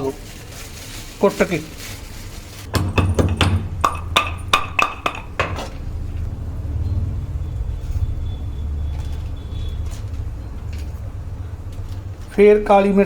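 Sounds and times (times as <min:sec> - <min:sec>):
metal pestle pounding pod: 0:02.7 - 0:06.1
low steady hum: 0:03.1 - 0:13.0.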